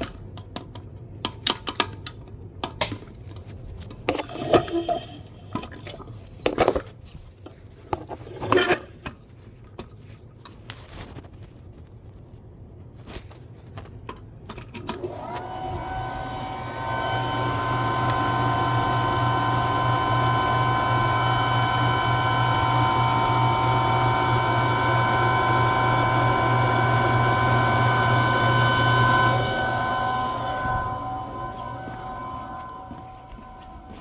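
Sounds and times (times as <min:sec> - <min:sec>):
electric motor whining: 0:15.0 - 0:34.0.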